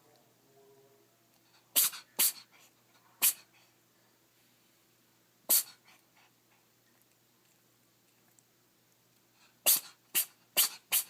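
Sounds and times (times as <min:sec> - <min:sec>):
cat sneezing: 0:01.7 - 0:02.5, 0:03.2 - 0:03.5, 0:05.5 - 0:06.0, 0:09.6 - 0:11.0.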